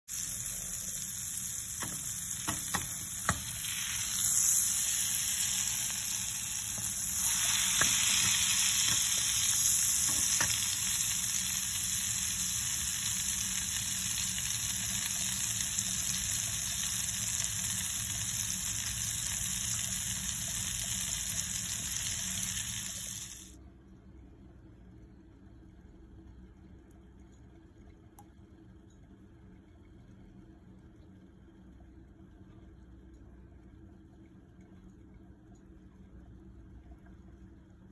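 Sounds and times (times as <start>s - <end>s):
butter sizzling in a pan: 0.1s - 23.5s.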